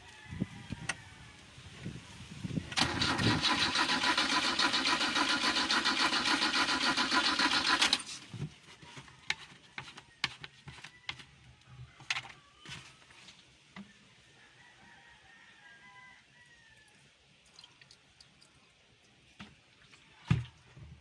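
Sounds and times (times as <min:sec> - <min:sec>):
car engine cranking on starter: 0:02.7 - 0:08.3.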